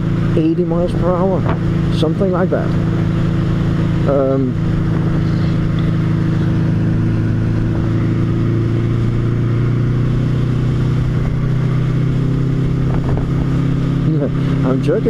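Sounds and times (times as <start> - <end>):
motorcycle engine running: 0.0 - 15.0
wind noise: 4.1 - 9.3, 10.9 - 13.9.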